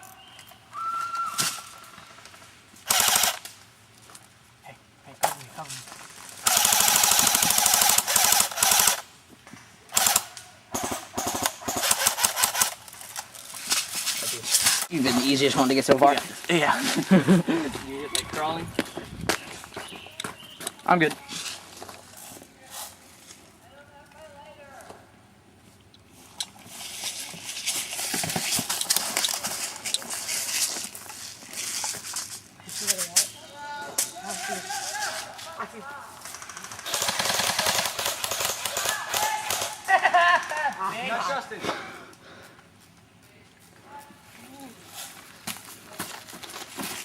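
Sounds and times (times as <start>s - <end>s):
airsoft guns firing bursts: 2.9s - 3.4s, 6.4s - 9.0s, 9.9s - 12.8s, 36.2s - 39.9s
crunching dry leaves and twigs: 5.6s - 7.7s, 26.5s - 33.2s, 34.0s - 35.8s.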